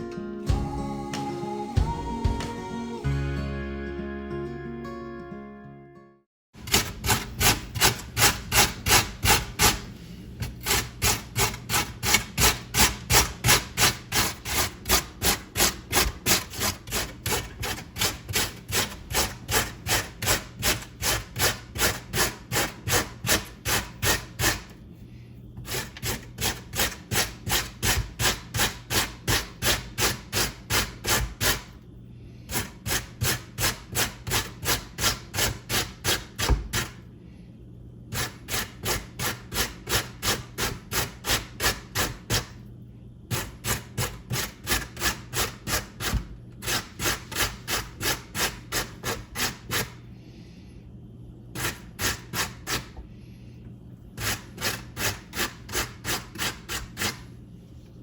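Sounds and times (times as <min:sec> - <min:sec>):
potato grated on metal grater: 0:06.6 - 0:24.7, 0:25.6 - 0:31.7, 0:32.5 - 0:37.0, 0:38.1 - 0:42.5, 0:43.3 - 0:50.0, 0:51.6 - 0:53.0, 0:54.2 - 0:57.3.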